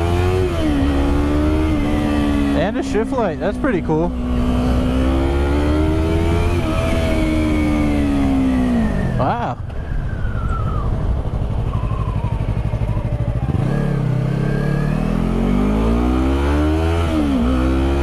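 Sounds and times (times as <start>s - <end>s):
motorcycle engine revving: 0.0s - 18.0s
wind rumble on microphone: 5.9s - 13.4s.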